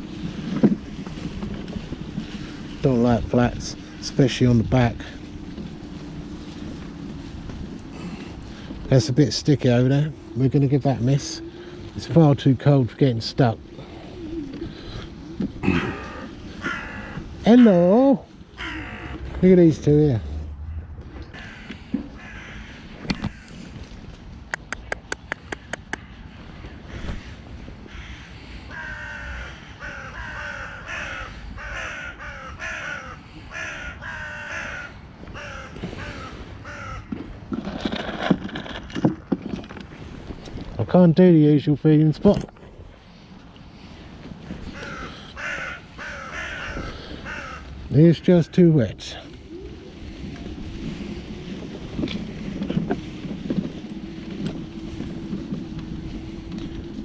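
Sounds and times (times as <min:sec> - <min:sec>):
tyres rumbling on rough path: 0:00.0 - 0:57.0
crow cawing: 0:13.8 - 0:19.4, 0:20.7 - 0:23.8, 0:25.4 - 0:37.3, 0:43.9 - 0:52.5.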